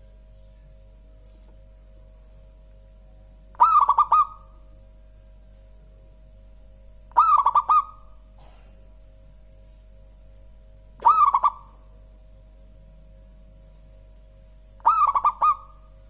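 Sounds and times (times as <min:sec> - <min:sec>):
dove cooing: 0:03.6 - 0:04.6, 0:07.1 - 0:08.2, 0:11.0 - 0:11.9, 0:14.8 - 0:16.0.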